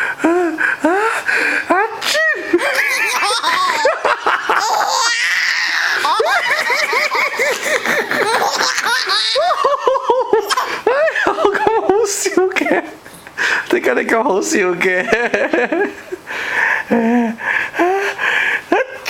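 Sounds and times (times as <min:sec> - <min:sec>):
little girl giggling: 0:01.7 - 0:13.0.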